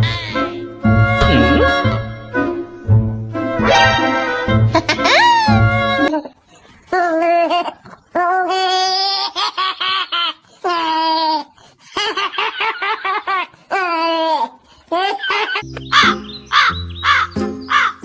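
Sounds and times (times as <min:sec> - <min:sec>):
high-pitched laughter: 0:04.7 - 0:15.7.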